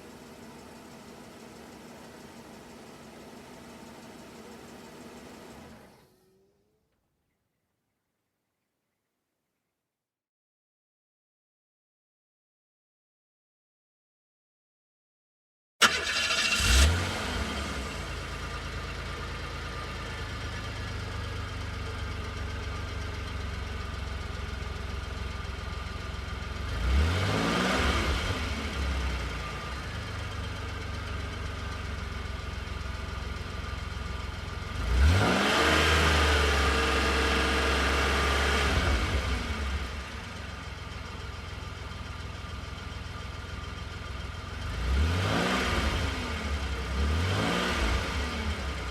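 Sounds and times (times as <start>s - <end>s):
car engine starting and idling: 0.0s - 6.5s, 15.8s - 48.9s
car engine revving: 15.8s - 18.3s, 26.6s - 29.9s, 34.7s - 40.5s, 44.5s - 48.9s.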